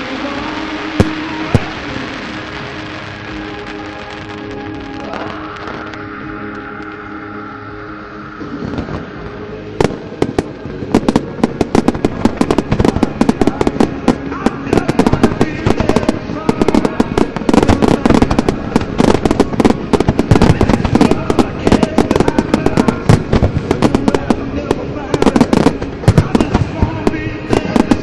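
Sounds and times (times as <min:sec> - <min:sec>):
fireworks bangs and crackle: 0:00.0 - 0:07.0, 0:08.4 - 0:28.0
show music: 0:00.0 - 0:28.0.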